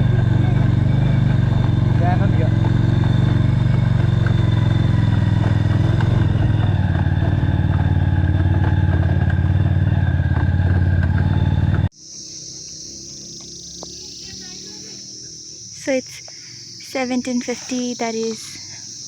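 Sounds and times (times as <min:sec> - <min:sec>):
insects chirring: 0:00.0 - 0:19.0
motorcycle engine running: 0:00.0 - 0:19.0.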